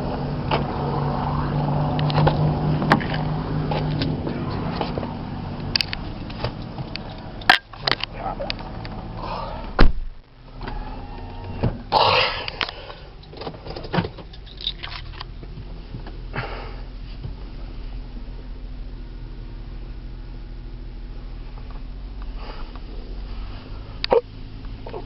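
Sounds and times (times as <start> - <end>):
car engine humming: 0.0 - 25.0.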